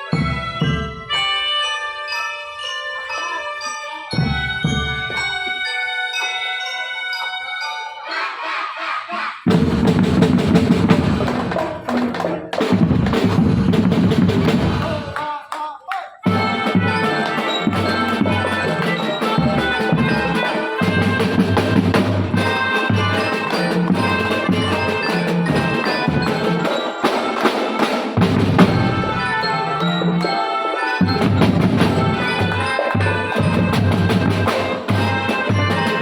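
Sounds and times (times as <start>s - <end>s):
marching drum band playing: 0.0s - 1.5s, 4.1s - 5.7s, 9.5s - 15.3s, 16.2s - 36.0s.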